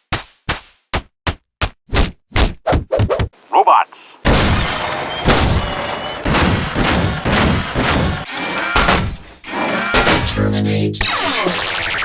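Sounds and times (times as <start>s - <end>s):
mechanical thuds and clanks: 4.2s - 11.5s.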